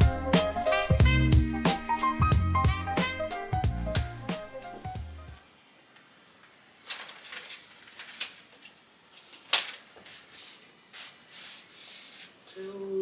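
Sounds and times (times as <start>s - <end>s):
objects rustling and scraping: 6.0s - 12.8s.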